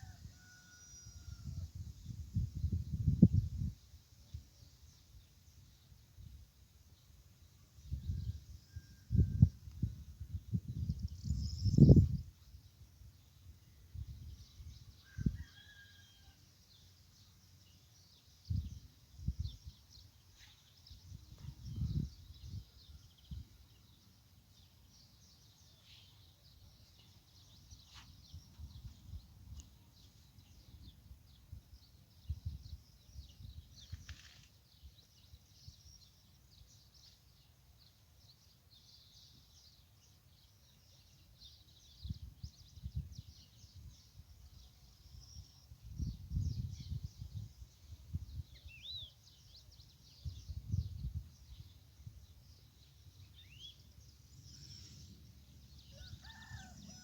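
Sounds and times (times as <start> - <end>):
small birds chirping: 13.2 - 57.0.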